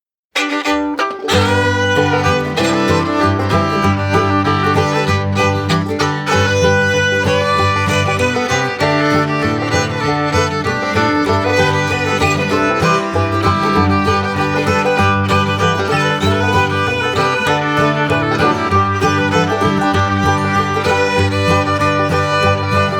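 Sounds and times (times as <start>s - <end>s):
upbeat bluegrass tune: 0.3s - 22.9s.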